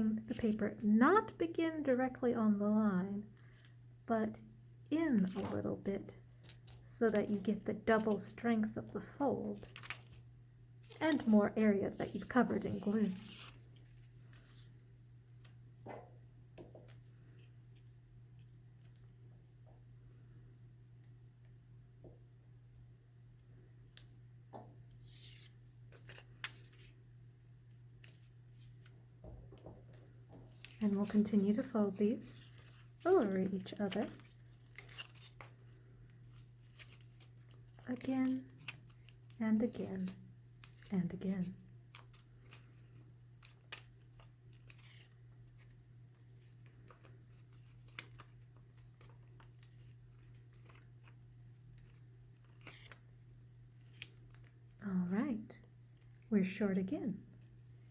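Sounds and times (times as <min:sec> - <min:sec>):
paper strips rustling: 0:05.1 - 0:05.8, 0:06.4 - 0:16.0, 0:24.8 - 0:27.1, 0:27.7 - 0:54.8.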